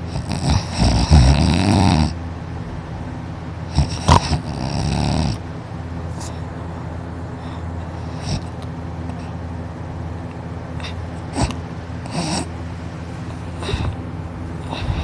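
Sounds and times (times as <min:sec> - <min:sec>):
person snoring loudly: 0:00.1 - 0:02.2, 0:03.7 - 0:05.4, 0:11.4 - 0:12.5.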